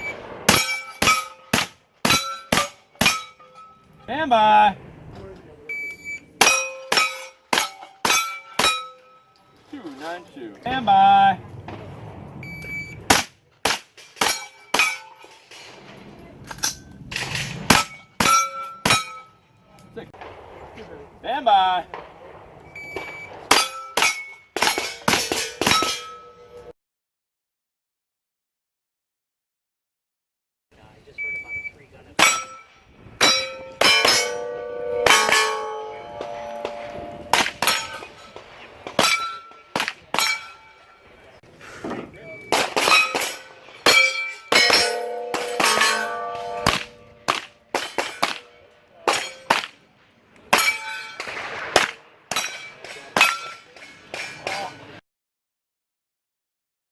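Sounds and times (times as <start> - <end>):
gunshots: 0.0 - 3.3, 11.6 - 15.0, 20.2 - 26.1, 33.1 - 41.0, 42.4 - 49.9, 50.5 - 54.7
bullets ringing on steel targets: 0.5 - 4.1, 6.4 - 10.2, 13.1 - 15.8, 16.5 - 20.0, 22.8 - 26.7, 32.1 - 41.4, 42.2 - 49.8, 50.5 - 55.0.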